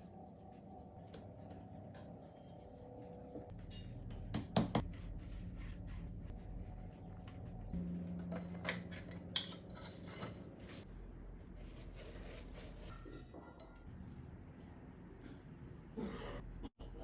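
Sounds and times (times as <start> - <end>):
utensils and dishes clinking: 8.2 - 10.8, 12.9 - 14.0.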